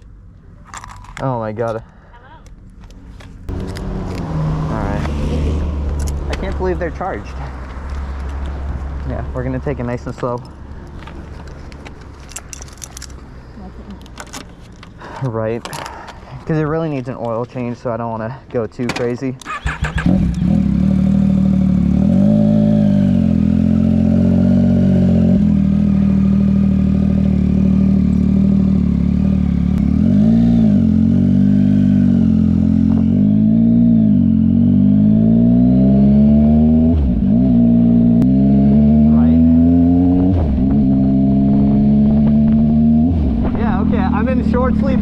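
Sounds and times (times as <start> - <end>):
motorcycle engine accelerating: 3.5 - 10.3, 19.5 - 45.0.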